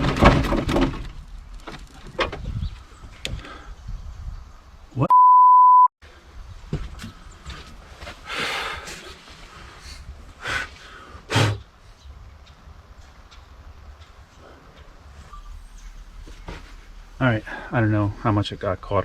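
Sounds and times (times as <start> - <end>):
censor bleep: 5.0 - 5.9, 15.3 - 15.8.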